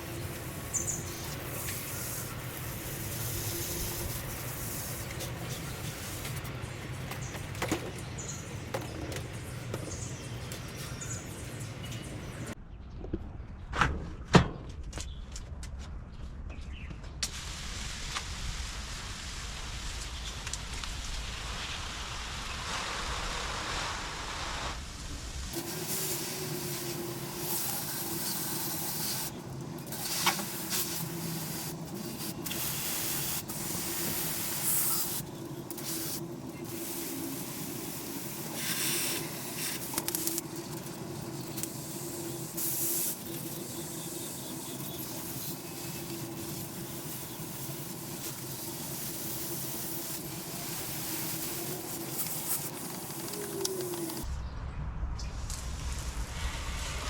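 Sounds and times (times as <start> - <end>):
steady hissing spray: 0.0 - 7.3, 17.3 - 54.3, 55.8 - 57.0
mechanical hum: 0.0 - 57.0.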